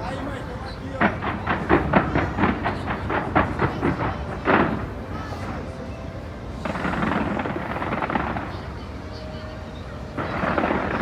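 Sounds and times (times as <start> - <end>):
fireworks bangs: 1.0 - 5.5, 6.6 - 9.2, 10.1 - 11.0.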